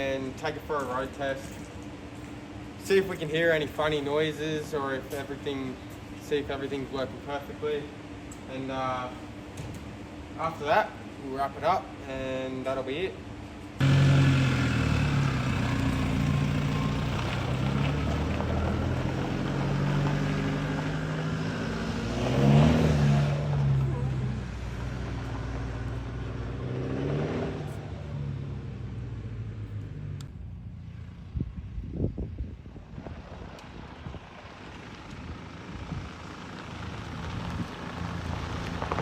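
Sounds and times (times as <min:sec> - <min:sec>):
car engine running: 0:13.8 - 0:20.9.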